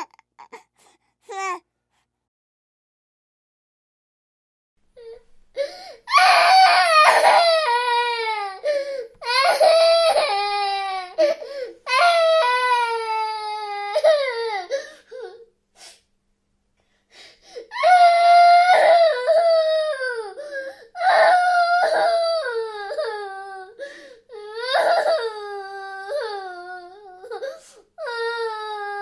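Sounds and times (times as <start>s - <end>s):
baby crying: 0.0s - 0.7s, 1.3s - 1.6s, 5.0s - 15.4s, 17.7s - 29.0s.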